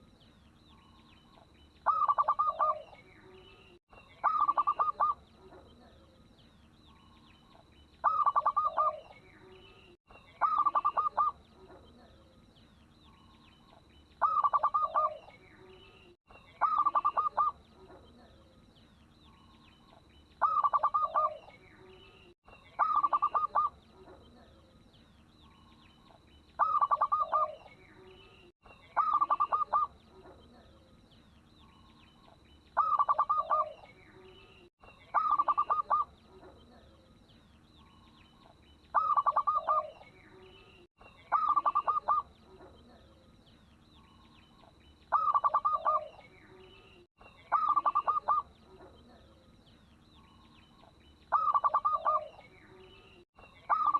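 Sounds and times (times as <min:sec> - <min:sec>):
dove cooing: 0:01.8 - 0:03.0, 0:04.2 - 0:06.1, 0:08.0 - 0:09.2, 0:10.4 - 0:12.2, 0:14.2 - 0:15.3, 0:16.6 - 0:18.4, 0:20.4 - 0:21.6, 0:22.8 - 0:24.6, 0:26.6 - 0:27.8, 0:29.0 - 0:30.7, 0:32.8 - 0:33.9, 0:35.1 - 0:36.9, 0:38.9 - 0:40.1, 0:41.3 - 0:43.2, 0:45.1 - 0:46.2, 0:47.5 - 0:49.3, 0:51.3 - 0:52.4, 0:53.7 - 0:53.9.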